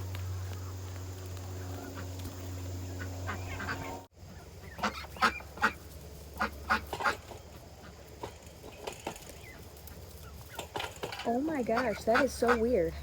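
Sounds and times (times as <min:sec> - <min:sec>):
steady low hum: 0:00.0 - 0:13.0
duck quacking: 0:02.9 - 0:05.8, 0:06.4 - 0:08.0, 0:11.6 - 0:12.9.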